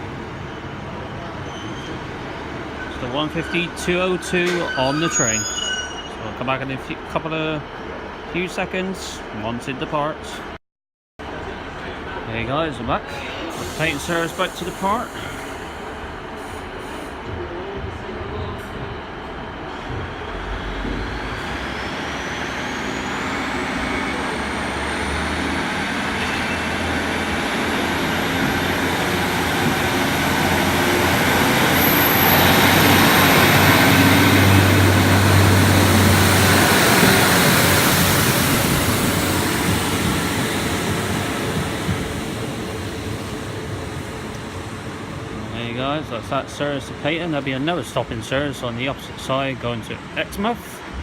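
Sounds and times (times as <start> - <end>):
diesel train accelerating with whine: 11.2 - 51.0.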